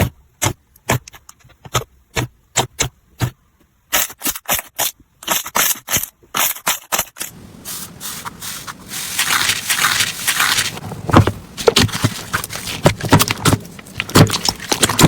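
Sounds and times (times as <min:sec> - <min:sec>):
slime popping and crackling: 0:07.7 - 0:15.0.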